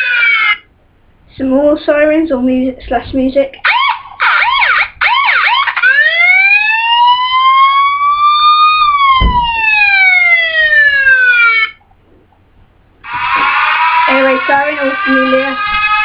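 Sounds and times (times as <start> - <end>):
electronic siren yelp and wail: 0.0 - 0.7, 3.6 - 11.8, 13.0 - 16.0
low thump: 9.0 - 10.0.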